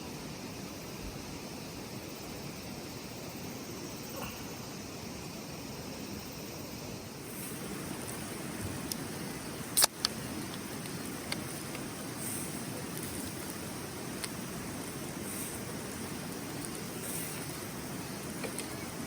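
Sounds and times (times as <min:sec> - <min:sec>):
steady rushing outdoor noise: 0:00.0 - 0:19.0
sharp clicks: 0:09.8 - 0:11.8.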